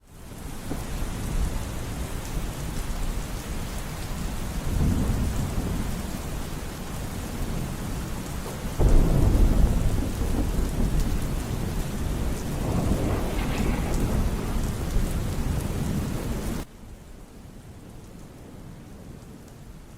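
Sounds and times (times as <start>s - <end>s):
heavy rain: 0.0s - 19.9s
rolling thunder: 0.6s - 16.7s
thunderclap: 4.5s - 16.7s.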